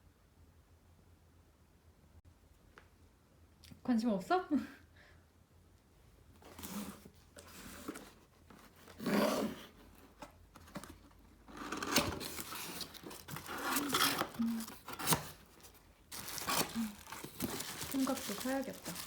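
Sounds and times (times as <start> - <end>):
packaging rustling and tearing: 6.4 - 19.0.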